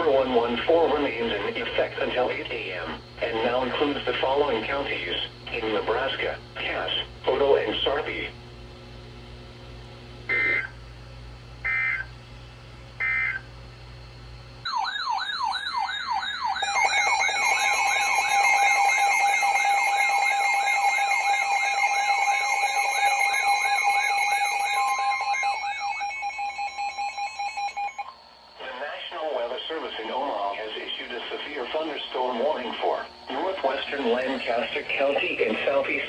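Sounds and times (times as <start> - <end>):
steady attention tone: 15.5 - 36.0
warbling alert tone: 15.8 - 28.1
digital data bursts: 16.5 - 36.0.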